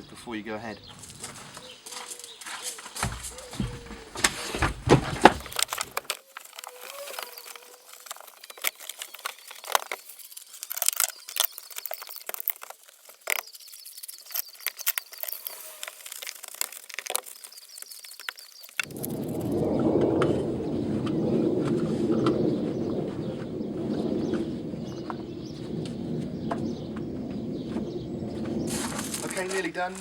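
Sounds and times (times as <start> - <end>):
tape ripping off roll: 2.8 - 19.4.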